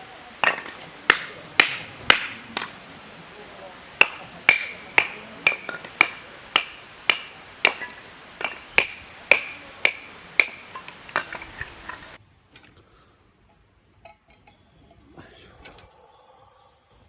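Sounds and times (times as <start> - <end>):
sharp ringing knocks: 0.4 - 2.8, 4.0 - 11.4.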